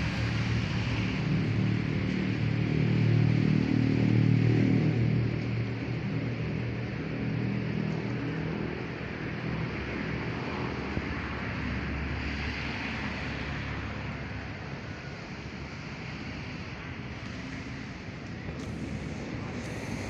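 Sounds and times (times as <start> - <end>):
traffic rushing: 12.4 - 20.0.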